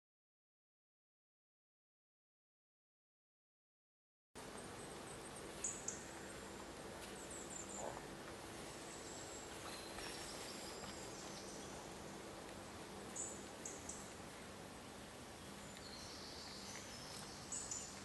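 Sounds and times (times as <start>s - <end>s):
faint outdoor hiss: 4.4s - 18.0s
small birds chirping: 4.4s - 18.0s.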